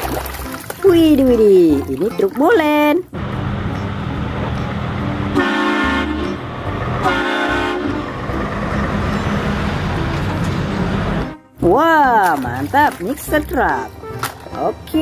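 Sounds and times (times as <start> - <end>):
vehicle horn blasts: 5.3 - 6.4, 7.0 - 8.1.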